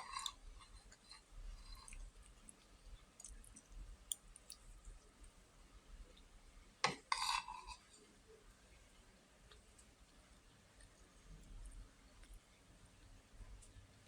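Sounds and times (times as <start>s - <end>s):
chewing and mouth clicks: 0.0s - 5.0s.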